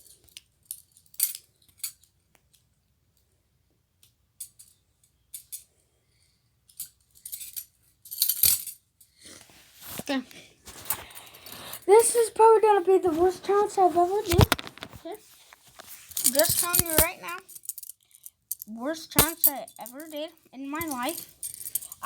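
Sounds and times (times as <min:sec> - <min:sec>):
handcuffs and chain clinking: 0:00.0 - 0:02.2, 0:04.4 - 0:05.8, 0:06.7 - 0:09.1, 0:14.1 - 0:22.0.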